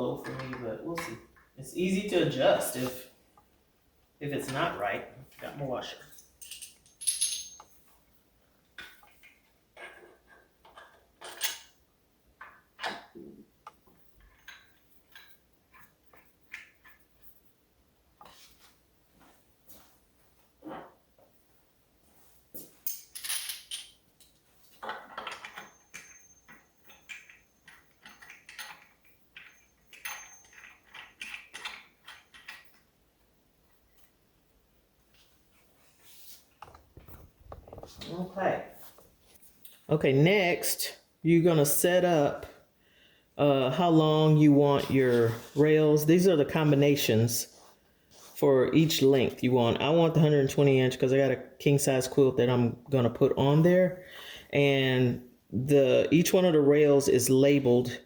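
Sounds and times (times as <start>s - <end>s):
metal hardware clinking: 6.1s - 7.8s, 22.8s - 32.7s.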